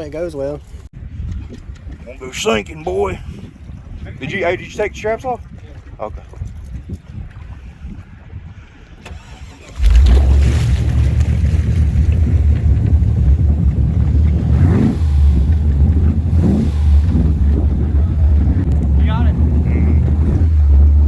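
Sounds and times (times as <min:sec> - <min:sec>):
boat engine revving: 0:09.1 - 0:21.0.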